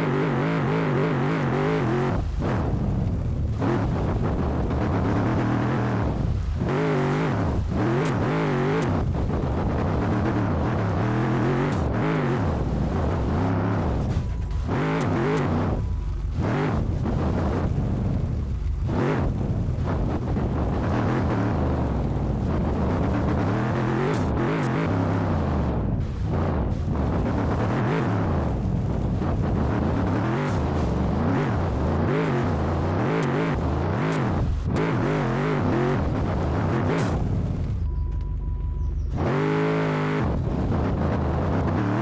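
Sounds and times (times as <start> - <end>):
car engine revving: 0.0 - 42.0.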